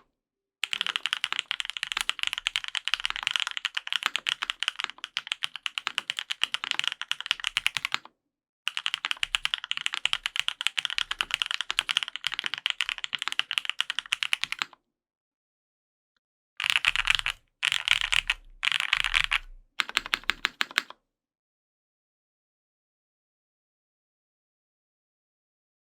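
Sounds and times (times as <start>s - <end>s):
fast typing on mechanical keyboard: 0.6s - 8.1s, 8.7s - 14.7s, 16.6s - 20.9s.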